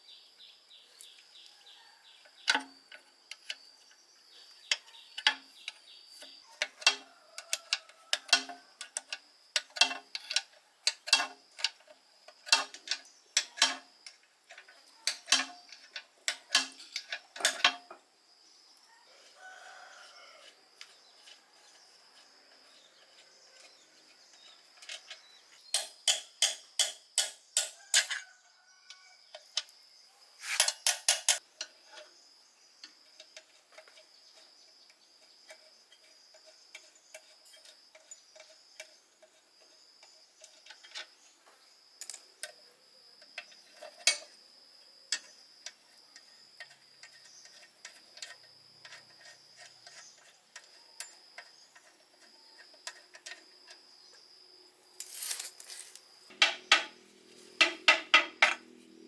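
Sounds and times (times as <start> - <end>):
high insect whine: 0.0 - 59.0
faint rooster crowing: 1.3 - 2.5, 6.4 - 9.2, 18.8 - 24.2, 27.6 - 29.7.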